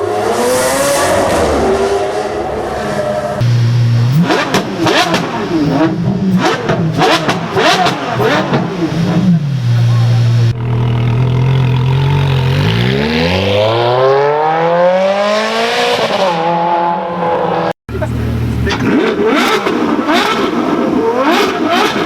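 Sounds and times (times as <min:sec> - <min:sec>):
supercar engine accelerating: 0:00.0 - 0:22.0
exhaust cracks: 0:03.4 - 0:13.2.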